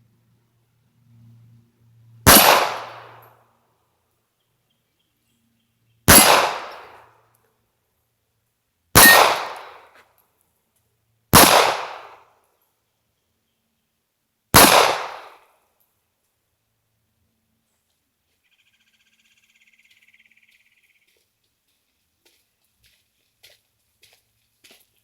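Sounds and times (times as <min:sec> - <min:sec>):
pistol shots with echo: 0:02.3 - 0:03.3, 0:06.1 - 0:07.0, 0:09.0 - 0:09.9, 0:11.4 - 0:12.2, 0:14.6 - 0:15.4.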